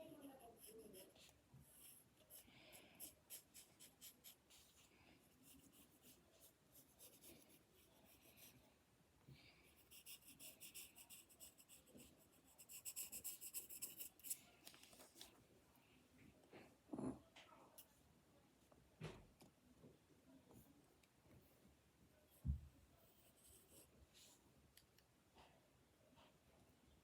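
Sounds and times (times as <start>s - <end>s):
pencil scratching on paper: 0.0s - 8.6s, 9.7s - 14.5s.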